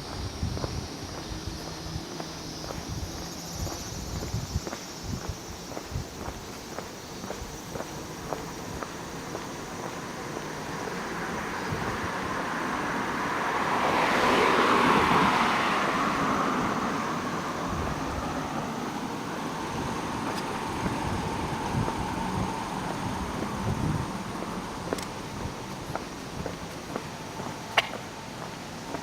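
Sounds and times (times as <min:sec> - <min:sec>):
road vehicle passing by: 0:00.0 - 0:04.3, 0:05.8 - 0:29.0.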